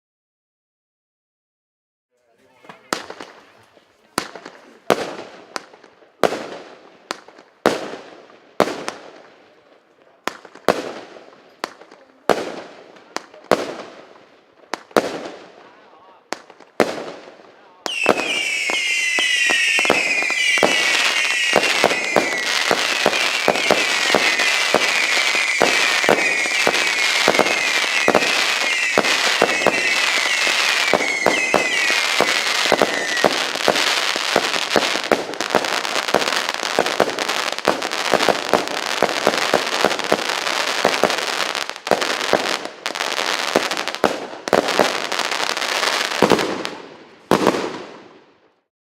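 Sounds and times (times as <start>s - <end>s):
firework shots firing: 10.3s - 48.2s
falling firework whistles: 17.9s - 42.5s.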